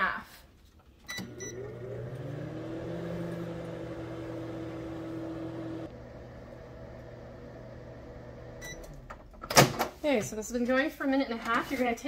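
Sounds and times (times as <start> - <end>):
microwave oven humming: 1.1 - 9.1.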